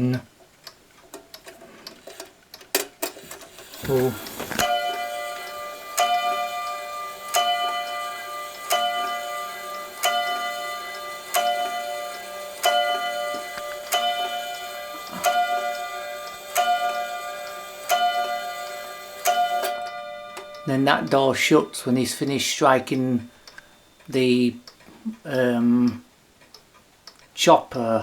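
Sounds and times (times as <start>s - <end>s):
clock striking bell-like tone: 3.8s - 24.5s.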